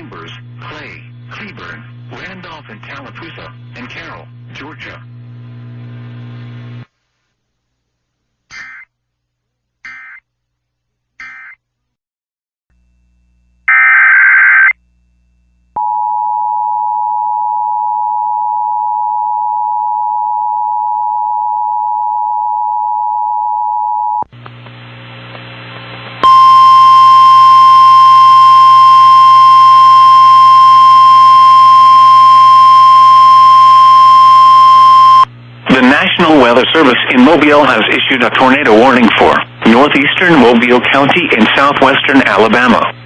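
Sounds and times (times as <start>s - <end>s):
radio static: 0.0s - 5.2s, 35.7s - 43.0s
two-tone attention signal: 26.2s - 35.3s.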